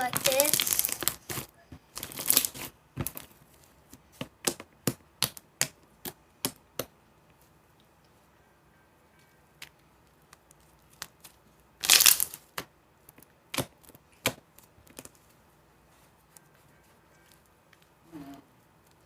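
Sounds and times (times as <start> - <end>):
slime crackling burst: 0.0 - 2.7, 10.9 - 12.5.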